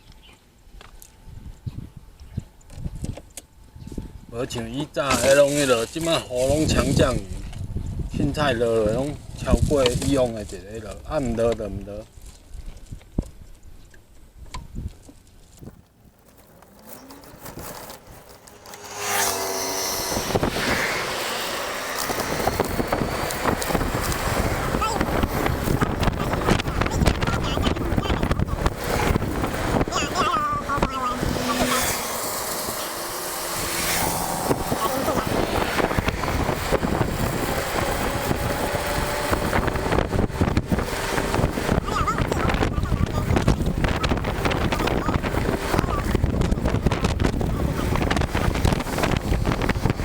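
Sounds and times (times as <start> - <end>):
wind on microphone: 1.2 - 4.6, 6.0 - 11.4, 16.9 - 50.0
faint rising whine: 16.0 - 27.0, 28.4 - 41.6.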